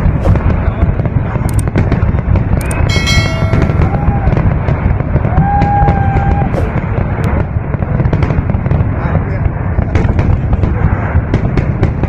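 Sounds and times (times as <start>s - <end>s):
fireworks booming: 0.0s - 12.0s
fireworks crackling: 0.0s - 12.0s
high-pitched tone: 2.6s - 4.1s
crowd calling out: 2.8s - 7.0s.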